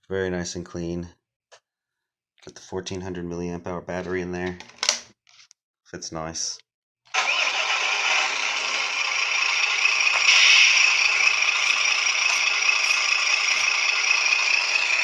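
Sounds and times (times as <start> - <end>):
toy truck rattle and whir: 7.1 - 15.0.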